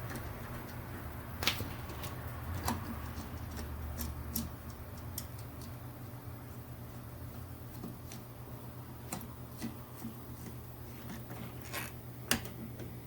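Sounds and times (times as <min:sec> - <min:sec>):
steady low hum: 0:00.0 - 0:13.0
small parts clicking and tapping: 0:01.4 - 0:05.8.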